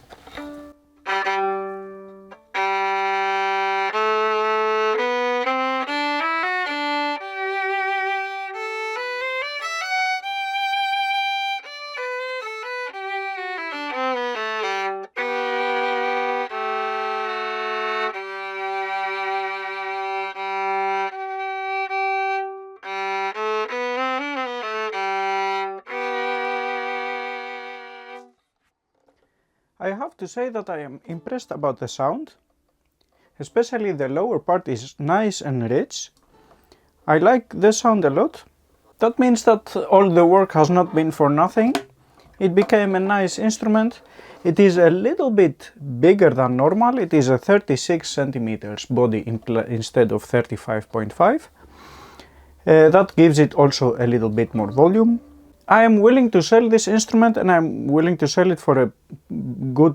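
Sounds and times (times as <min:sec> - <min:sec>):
violin playing slow melody: 0:00.2 - 0:28.4, 0:51.6 - 0:56.7.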